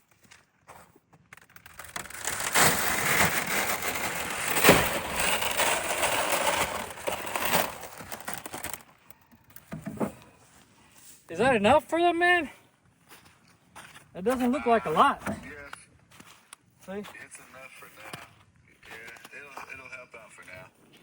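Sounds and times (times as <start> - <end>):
dry feed pouring into tray: 2.0 - 8.8.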